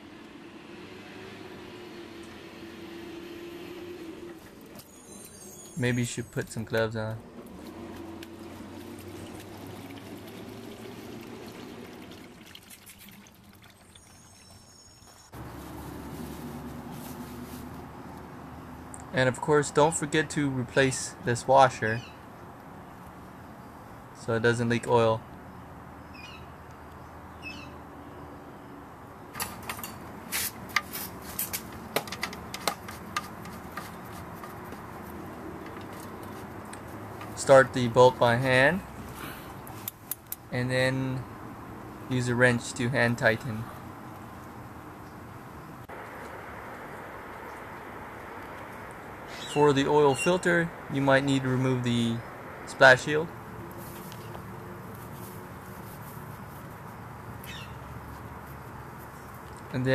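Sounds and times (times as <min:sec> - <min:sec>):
oil draining into a pan: 0:08.9 - 0:14.5.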